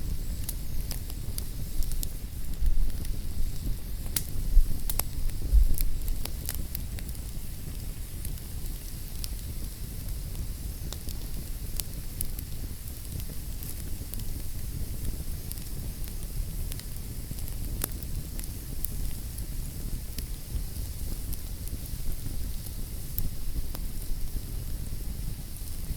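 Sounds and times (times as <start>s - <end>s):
fire crackles and pops: 0.0s - 25.9s
fire flames rushing: 0.0s - 25.9s.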